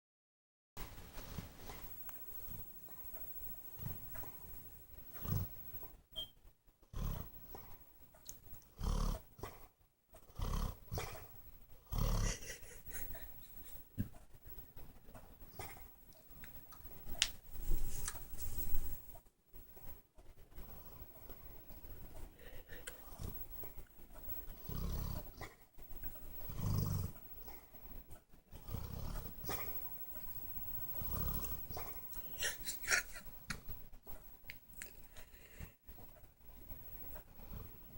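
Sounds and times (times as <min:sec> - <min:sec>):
dog snoring: 0:01.2 - 0:05.9, 0:06.8 - 0:07.8, 0:08.5 - 0:13.2, 0:15.5 - 0:16.0, 0:20.6 - 0:21.4, 0:22.4 - 0:32.6, 0:35.6 - 0:37.9.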